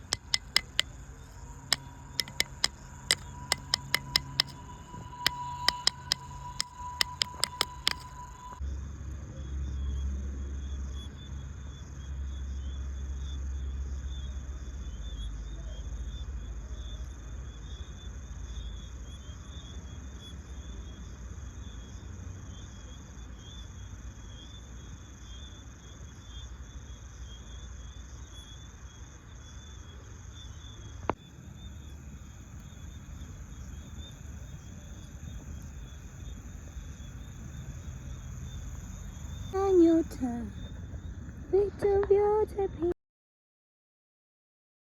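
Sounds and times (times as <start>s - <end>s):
sharp click: 0.0s - 8.3s
crickets trilling: 0.0s - 8.6s, 10.6s - 41.7s.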